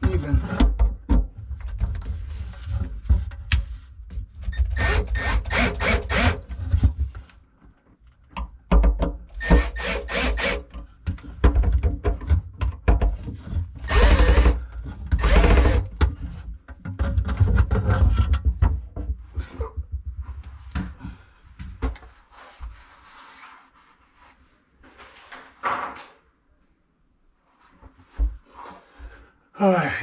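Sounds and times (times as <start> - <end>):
cordless drill running: 4.8 - 6.4, 9.4 - 10.6, 13.9 - 14.6, 15.2 - 15.8.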